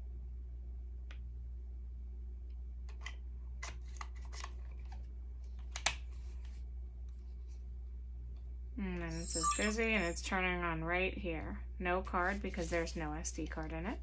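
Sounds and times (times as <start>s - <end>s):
steady low hum: 4.6s - 14.0s.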